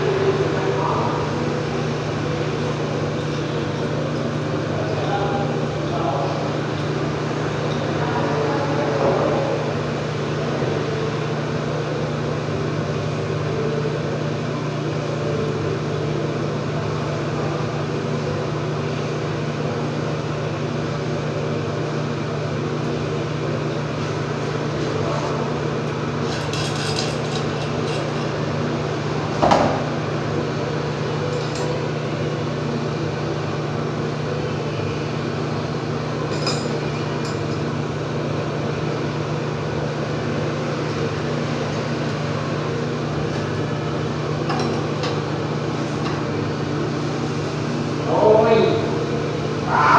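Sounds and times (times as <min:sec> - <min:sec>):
low mechanical hum: 0:00.0 - 0:49.9.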